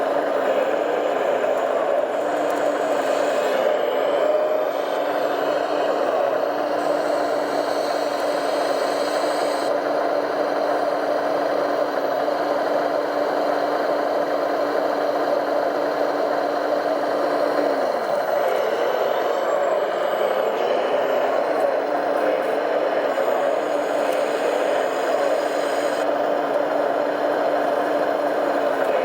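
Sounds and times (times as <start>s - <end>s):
toy truck motor whirring: 16.9s - 26.1s.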